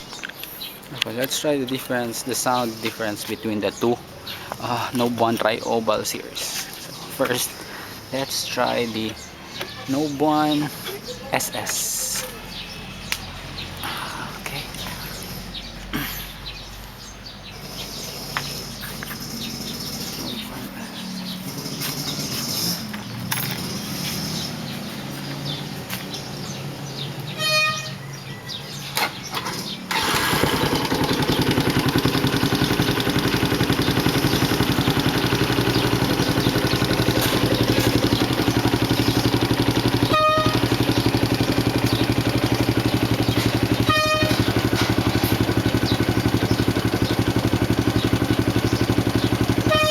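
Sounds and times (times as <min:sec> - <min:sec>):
motorcycle engine idling: 0:16.6 - 0:27.9, 0:29.9 - 0:49.9.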